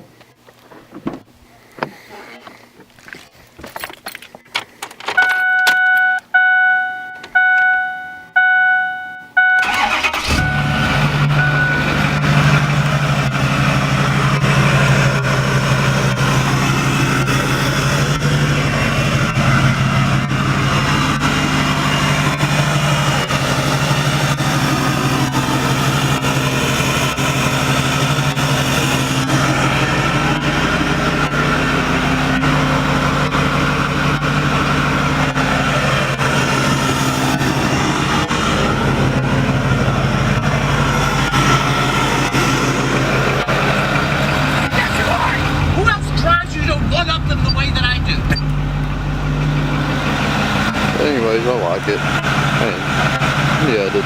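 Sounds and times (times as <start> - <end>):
diesel engine starting and idling: 4.5 - 54.0
truck warning chime: 5.2 - 13.1, 44.2 - 50.0.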